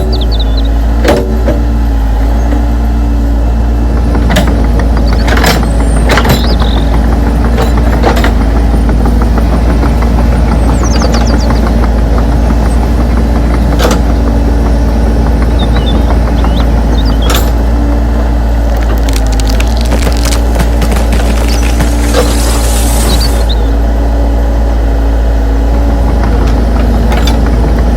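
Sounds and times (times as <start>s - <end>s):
loud motor drone: 0.0s - 27.9s
sharp cracks and snaps: 18.8s - 22.1s.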